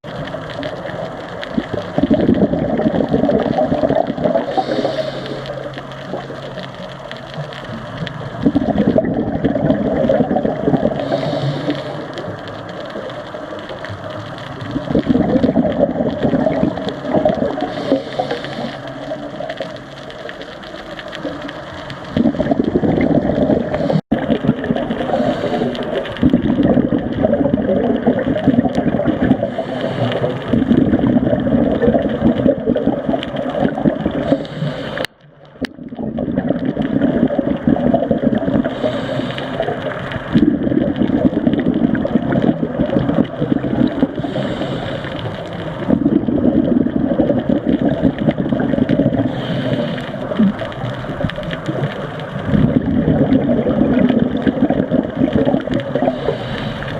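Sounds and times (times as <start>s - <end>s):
exhaled air bubbling: 0.0s - 56.9s
diver inhaling through regulator: 4.4s - 6.4s, 10.7s - 12.4s, 16.6s - 19.3s, 25.0s - 26.2s, 29.2s - 30.7s, 34.2s - 35.1s, 38.4s - 40.0s, 43.8s - 45.7s, 49.1s - 50.7s, 56.0s - 56.9s.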